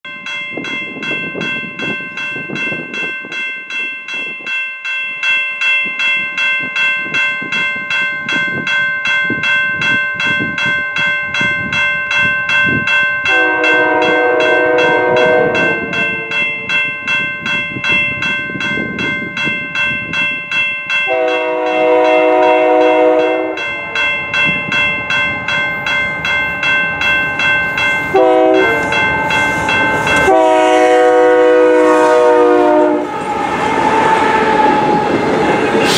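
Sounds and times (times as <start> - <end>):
bell ringing: 0.0 - 31.3
locomotive air horn: 13.3 - 16.4, 21.1 - 24.0, 28.1 - 28.9, 30.2 - 35.1.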